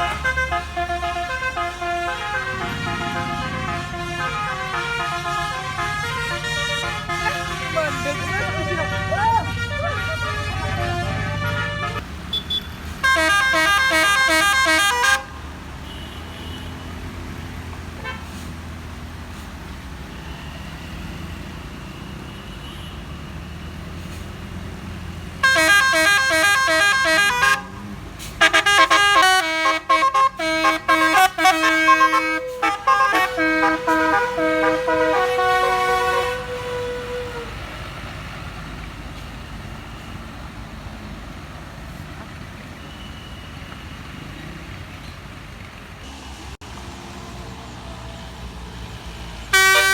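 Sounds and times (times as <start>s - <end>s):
musical bus air horn: 0.0s - 12.0s, 12.9s - 16.8s, 18.0s - 18.5s, 25.4s - 37.8s, 49.5s - 49.9s
vehicle and road noise: 0.0s - 49.9s.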